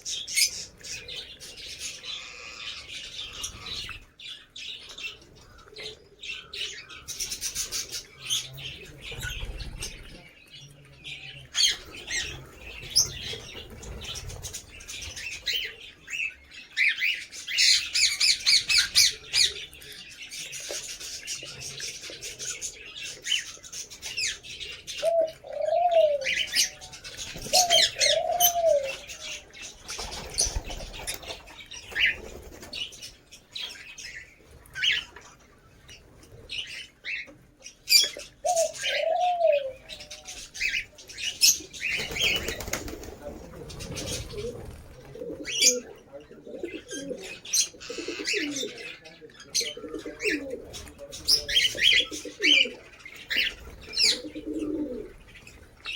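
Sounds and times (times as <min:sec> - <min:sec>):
lovebirds chirping: 0:00.0 - 0:55.9
low cooing: 0:27.5 - 0:29.0, 0:38.4 - 0:40.3.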